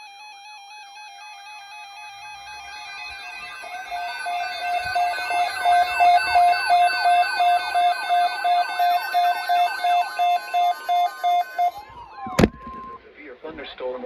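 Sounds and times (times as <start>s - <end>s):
pulsing alert beeps: 2.4s - 12.4s
warbling pitch sweeps: 2.5s - 13.0s.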